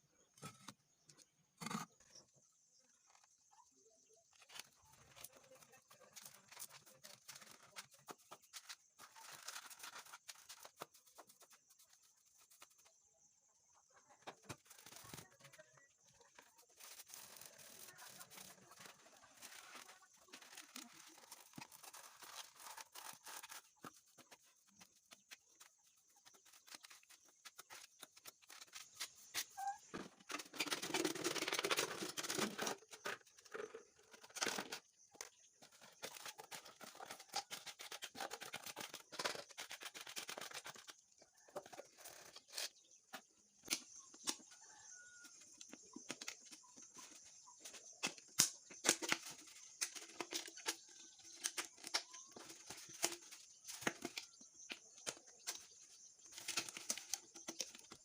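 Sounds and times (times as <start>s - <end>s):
rustling: 16.3s - 34.8s.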